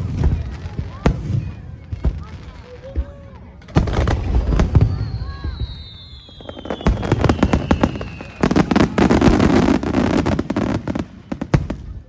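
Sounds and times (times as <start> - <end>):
fireworks bursting and crackling: 0.0 - 12.0
descending firework whistle: 4.5 - 11.4.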